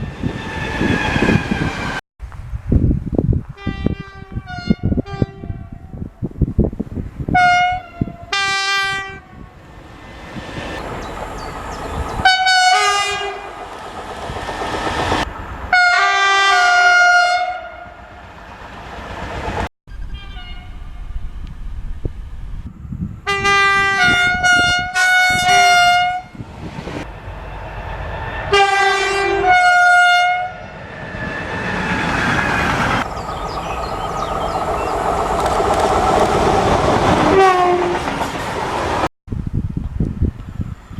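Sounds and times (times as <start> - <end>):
train rushing noise: 0.0 - 2.0, 5.9 - 40.8
train wheel clatter: 10.4 - 15.3, 31.6 - 39.1
two-note train horn blasts: 20.1 - 21.2, 23.3 - 26.4, 28.5 - 30.6.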